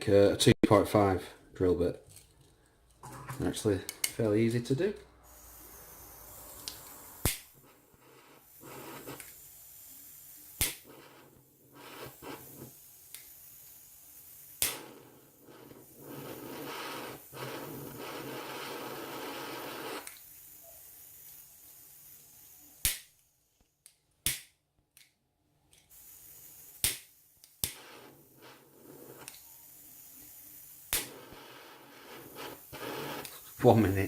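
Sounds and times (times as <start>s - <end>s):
torch igniter clicks: 2.9s - 4.3s, 4.9s - 9.5s, 10.5s - 13.8s, 14.4s - 20.4s, 22.8s - 23.2s, 23.8s - 33.4s
blowtorch hissing: 3.0s - 23.1s, 25.8s - 34.0s.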